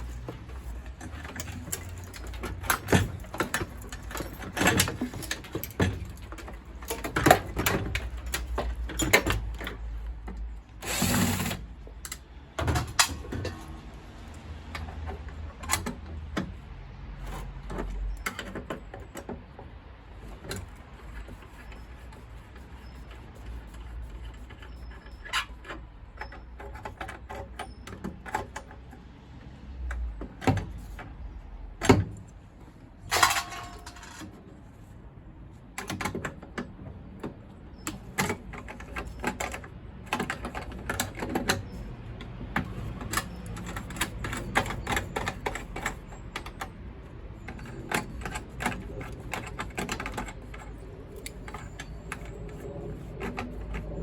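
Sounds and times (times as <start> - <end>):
metal tools clinking and knocking: 0.0 - 13.7, 33.0 - 34.5.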